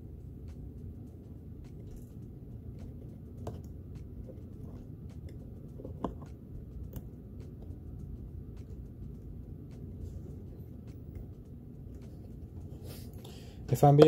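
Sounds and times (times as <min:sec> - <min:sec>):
steady low background noise: 0:00.0 - 0:14.0
clicks and taps on a laptop: 0:02.8 - 0:07.8.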